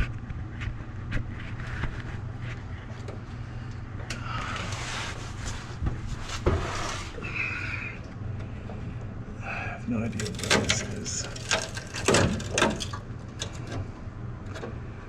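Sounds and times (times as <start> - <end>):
steady low hum: 0.0 - 15.0
rough metal scraping: 4.5 - 7.4, 10.1 - 13.7
metal knocks and clicks: 10.2 - 13.8.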